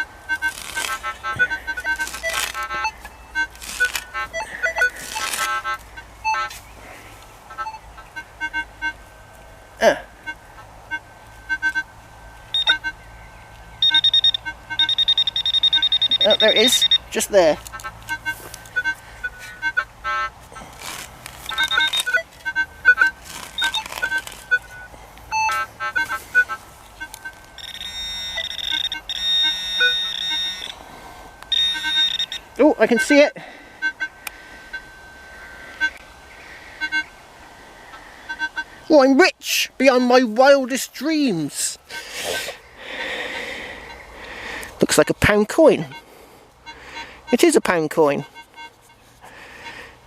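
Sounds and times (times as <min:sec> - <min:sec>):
metal detector beeps: 0:00.0 - 0:06.6, 0:07.5 - 0:09.0, 0:10.2 - 0:36.1, 0:36.8 - 0:37.1, 0:38.3 - 0:44.1, 0:44.8 - 0:49.0
metal detector sliding tone: 0:00.0 - 0:06.7, 0:13.8 - 0:19.9, 0:20.6 - 0:36.0, 0:41.9 - 0:42.6.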